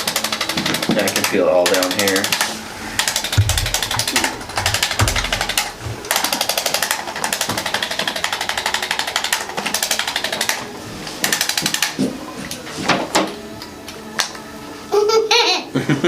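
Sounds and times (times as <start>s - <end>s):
electric percussion device tapping: 0.0s - 12.0s.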